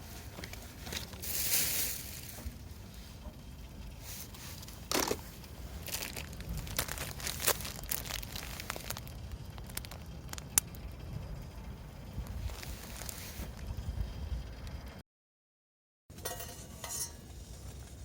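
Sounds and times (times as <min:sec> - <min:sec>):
crinkling and rustling: 0:00.0 - 0:03.4, 0:04.0 - 0:10.8, 0:12.2 - 0:13.8.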